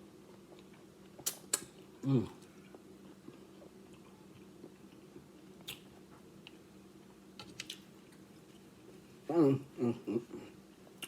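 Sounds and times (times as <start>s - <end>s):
wet mouth clicks: 1.2s - 1.7s, 5.6s - 5.9s.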